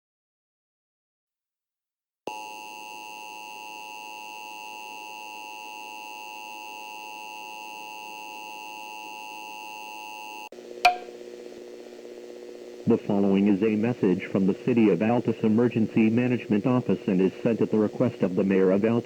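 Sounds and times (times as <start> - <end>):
faint low hum: 10.6 - 19.0
dual-tone alert tone: 10.8 - 11.1
sharp click: 10.8 - 11.1.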